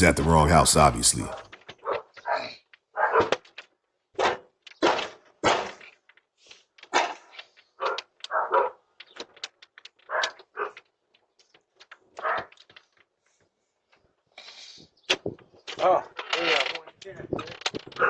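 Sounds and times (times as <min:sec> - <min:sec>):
dog barking: 0:03.0 - 0:03.3, 0:07.8 - 0:08.8.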